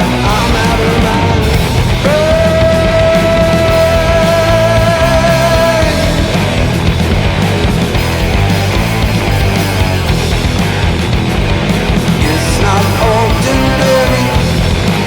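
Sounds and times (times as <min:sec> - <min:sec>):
stoner rock music: 0:00.0 - 0:15.0
lead guitar long note: 0:00.1 - 0:08.5.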